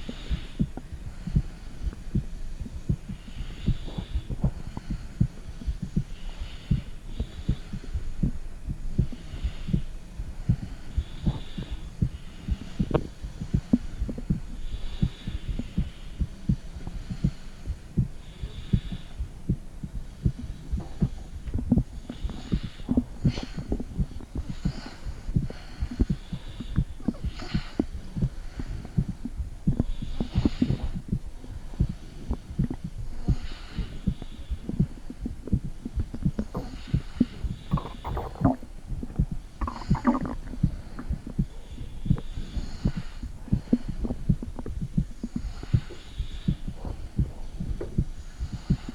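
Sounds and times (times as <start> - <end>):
heartbeat thumps: 0.0 - 48.9
brief gurgles: 37.7 - 38.7, 39.6 - 40.7.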